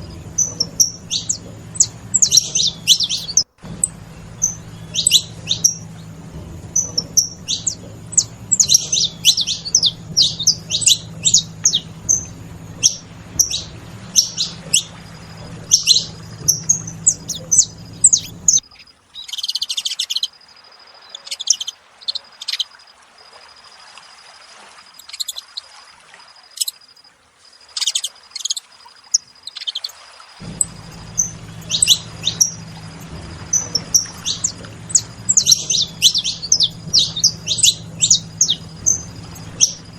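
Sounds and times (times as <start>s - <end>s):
finches chirping: 0.0s - 19.4s, 30.4s - 39.9s.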